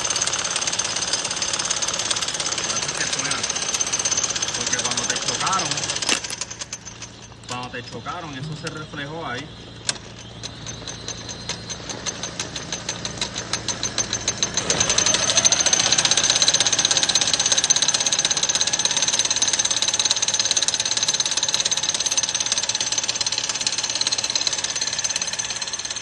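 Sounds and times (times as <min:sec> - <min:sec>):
motor gears clacking and rattling: 0:00.0 - 0:26.0.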